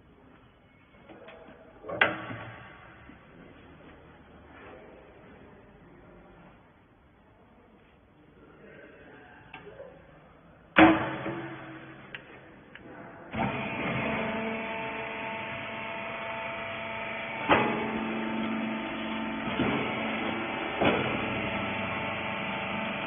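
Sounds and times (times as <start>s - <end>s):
loud metal clank: 10.8s - 12.1s
baler motor humming: 13.3s - 23.0s.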